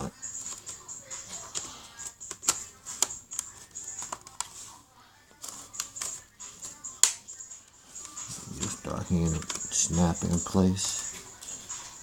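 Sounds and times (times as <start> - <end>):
keyboard clips snapping: 7.0 - 7.2.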